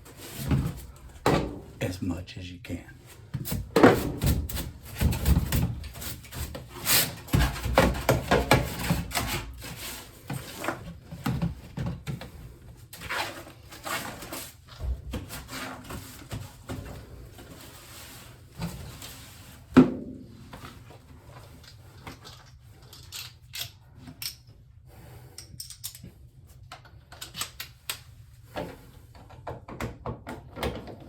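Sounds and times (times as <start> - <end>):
rubbing and scraping: 3.4 - 10.9.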